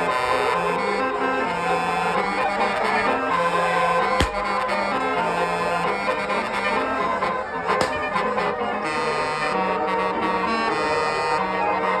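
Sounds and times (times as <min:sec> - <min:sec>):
sharp click: 0:04.2 - 0:04.5, 0:07.8 - 0:08.2.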